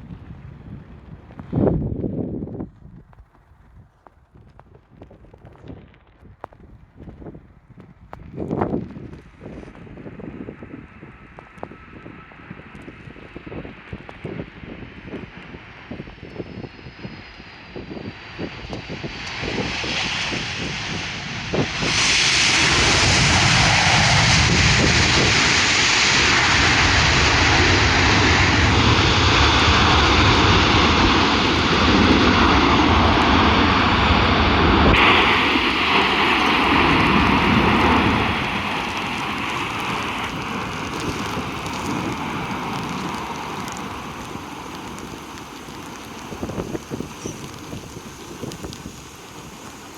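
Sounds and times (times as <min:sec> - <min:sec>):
wind buffeting microphone: 0:00.0 - 0:49.9
jet engine whine and roar: 0:08.8 - 0:49.9.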